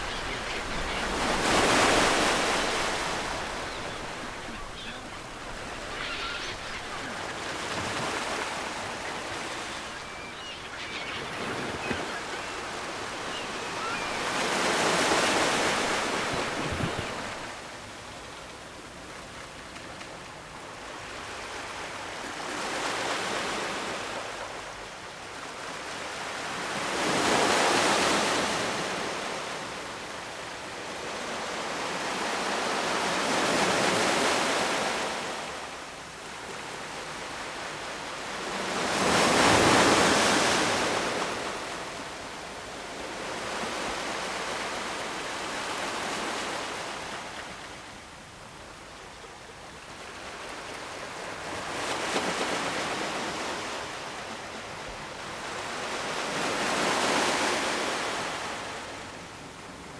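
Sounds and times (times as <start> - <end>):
ocean surf breaking: 0.0 - 17.6.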